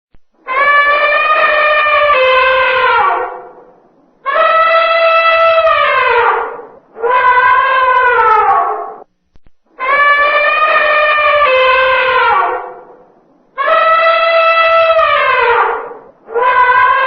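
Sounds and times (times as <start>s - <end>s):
elephant trumpeting: 0.5s - 9.0s, 9.8s - 13.0s, 13.6s - 17.0s.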